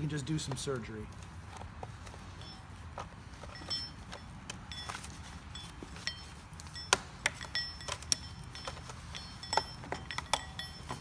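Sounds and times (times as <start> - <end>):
hand tools clicking on metal lock: 5.6 - 11.0.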